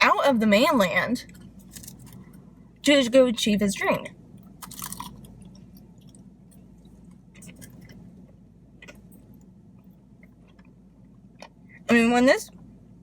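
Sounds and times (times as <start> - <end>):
faint close-up chewing: 4.4 - 11.8.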